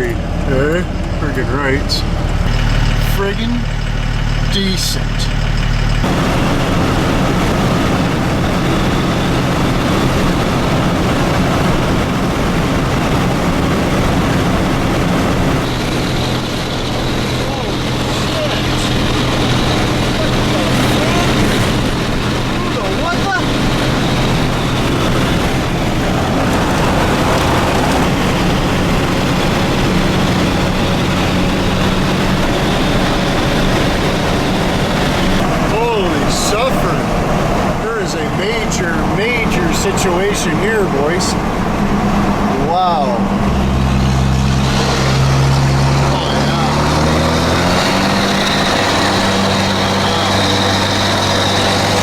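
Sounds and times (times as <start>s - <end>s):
vehicle engine and road noise: 0.0s - 52.0s.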